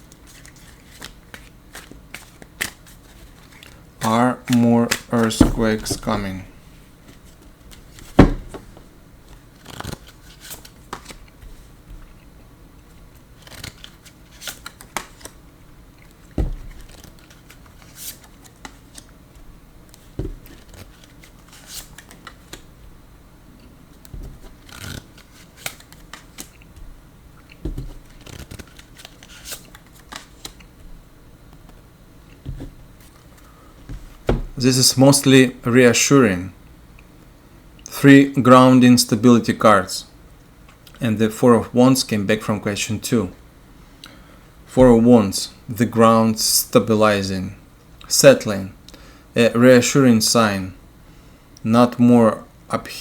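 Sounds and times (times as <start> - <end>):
cards shuffled and laid down: 0.4 - 6.4, 7.1 - 12.0, 16.3 - 19.1, 24.1 - 26.5, 27.6 - 30.6, 32.4 - 34.6
heavier knocks on table: 5.4 - 6.2, 8.2 - 8.8.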